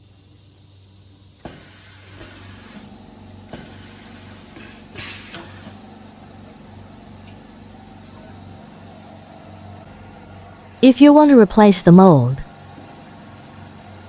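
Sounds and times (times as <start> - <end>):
compressed air hiss: 0.0 - 9.7.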